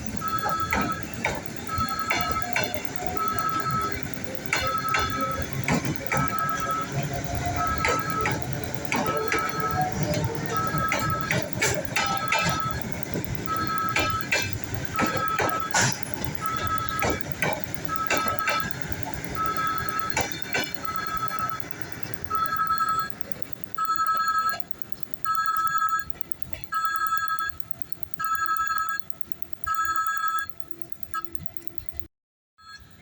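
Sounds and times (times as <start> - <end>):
train wheels clanking and rumbling: 0.0 - 23.7
electronic warning beeps: 0.0 - 33.0.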